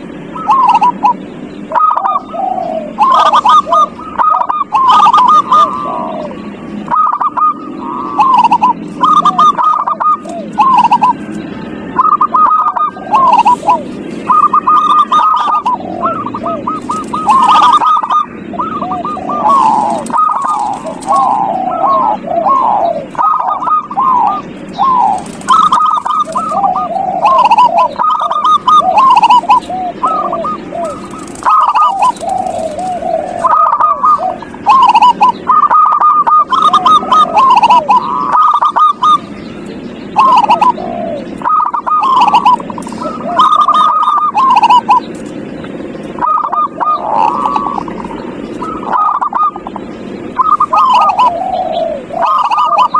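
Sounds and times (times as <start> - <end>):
doves cooing: 0.0 - 52.9.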